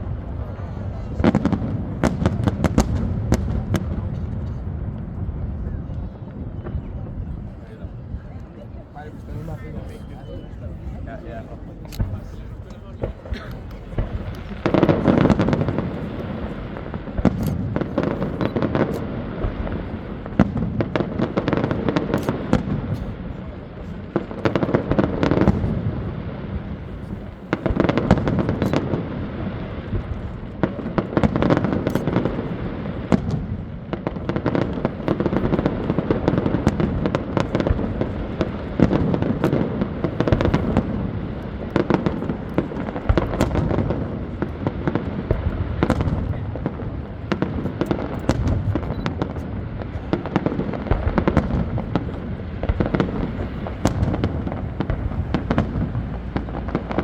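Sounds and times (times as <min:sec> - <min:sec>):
low firework booms: 0:00.0 - 0:10.0, 0:10.9 - 0:57.0
fireworks bangs and crackling: 0:00.0 - 0:57.0.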